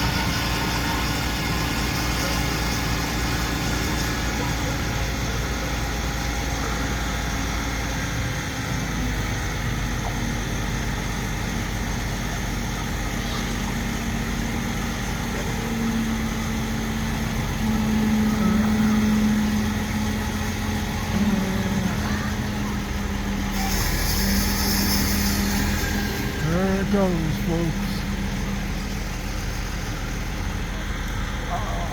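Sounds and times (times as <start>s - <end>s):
crane engine humming: 0.0s - 31.9s
hiss: 23.5s - 26.4s.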